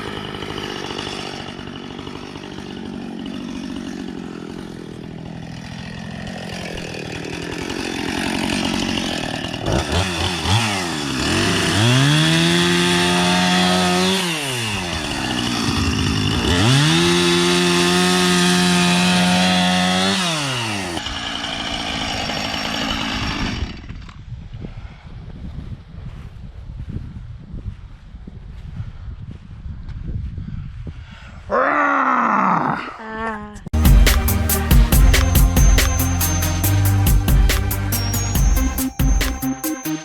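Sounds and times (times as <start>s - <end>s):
small engine revving: 0.0s - 24.2s.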